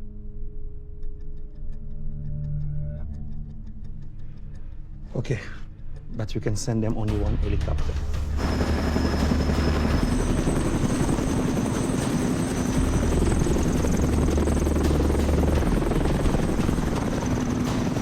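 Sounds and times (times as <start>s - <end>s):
helicopter rotor blades chopping: 7.0s - 18.0s.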